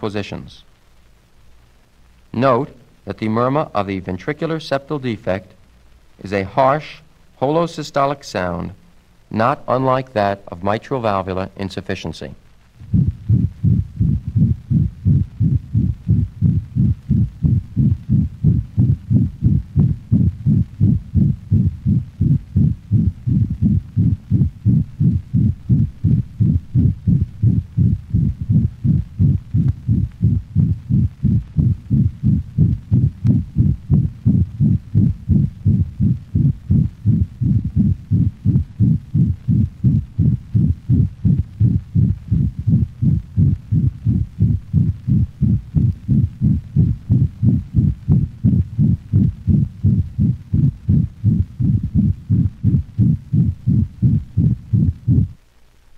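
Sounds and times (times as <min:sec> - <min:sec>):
dog heartbeat with murmur: 0:12.8 - 0:55.4.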